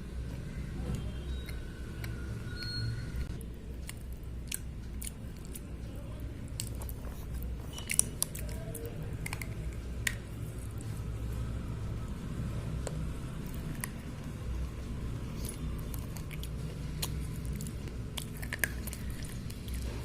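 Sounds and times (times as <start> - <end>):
low steady hum: 0.0 - 20.0
slate pencils crunching: 3.8 - 11.1, 13.3 - 20.0.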